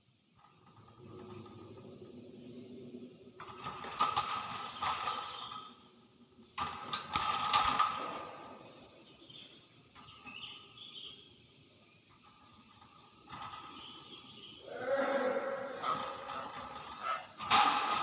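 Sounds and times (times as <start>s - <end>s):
myna harsh rasping calls: 14.6s - 17.4s.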